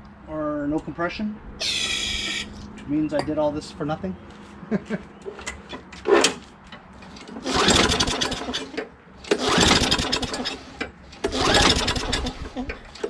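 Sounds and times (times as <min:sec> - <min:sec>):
mower engine turning over: 0:07.0 - 0:13.0
recoil starter rope pulls: 0:07.0 - 0:13.0.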